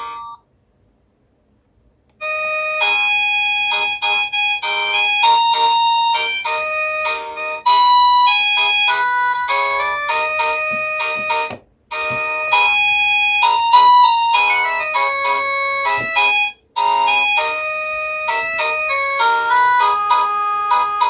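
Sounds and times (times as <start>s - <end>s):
doorbell chime electronic melody: 7.7s - 21.0s.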